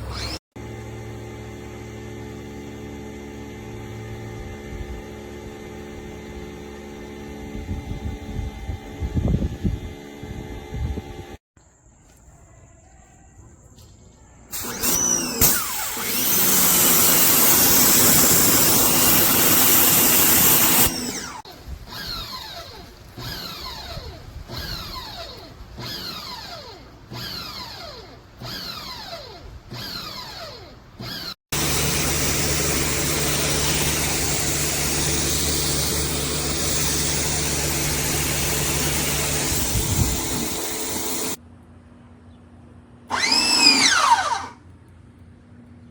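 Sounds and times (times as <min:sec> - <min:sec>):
pressure washer spraying: 0:14.5 - 0:26.2, 0:31.5 - 0:41.4.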